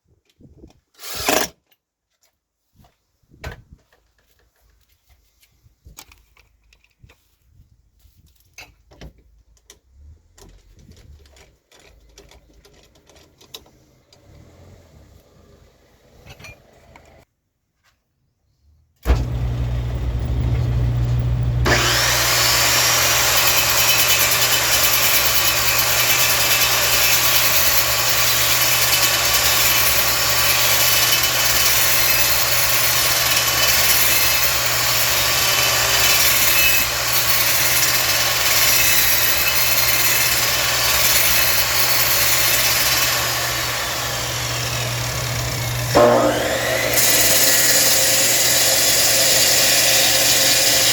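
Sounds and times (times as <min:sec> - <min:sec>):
lathe tool cutting wood: 0:19.0 - 0:50.9
wood lathe motor hum: 0:19.0 - 0:50.9.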